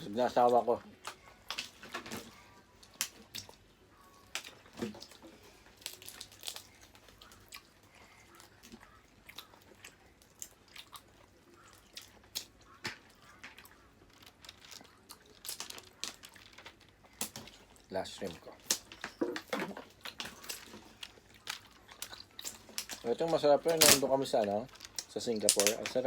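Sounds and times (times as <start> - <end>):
chewing and crunching: 0.0 - 26.0
shells clicking and crackling: 12.4 - 17.7, 20.1 - 26.0.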